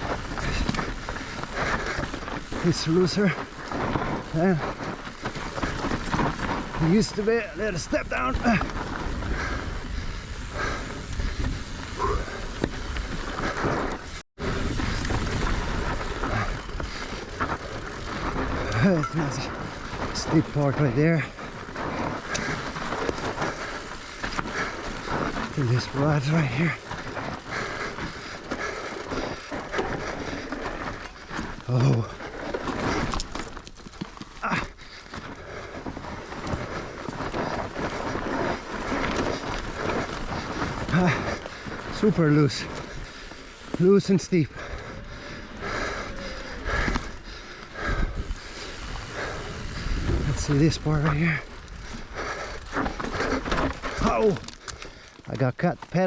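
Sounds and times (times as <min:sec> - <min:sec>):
bike tyres crunching on dirt: 0:00.0 - 0:56.0
wind noise on microphone: 0:47.8 - 0:50.8.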